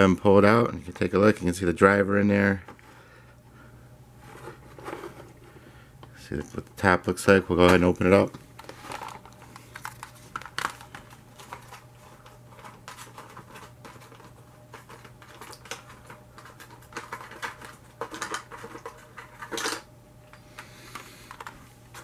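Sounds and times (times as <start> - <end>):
plastic packaging clicks and rustles: 7.6 - 19.9.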